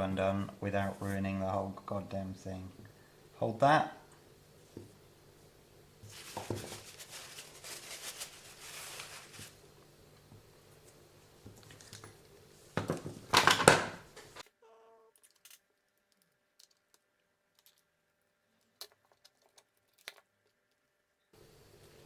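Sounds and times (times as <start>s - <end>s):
scraping and rustling of parts: 11.6s - 21.3s.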